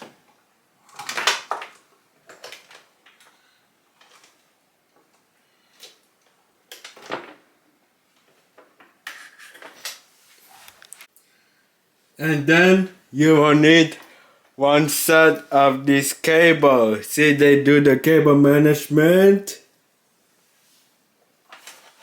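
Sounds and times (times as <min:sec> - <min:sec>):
cables rustling: 0:00.0 - 0:11.3.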